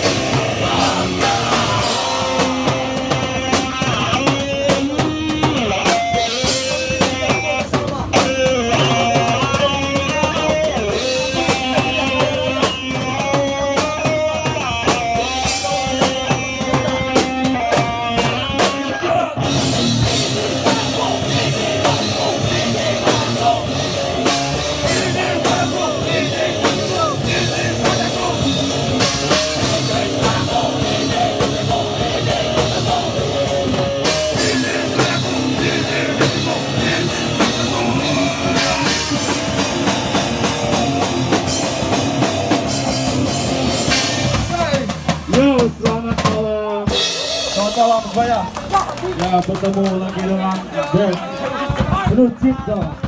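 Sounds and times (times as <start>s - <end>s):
hardcore band playing live: 0.0s - 53.0s
melodic guitar line: 19.4s - 45.3s.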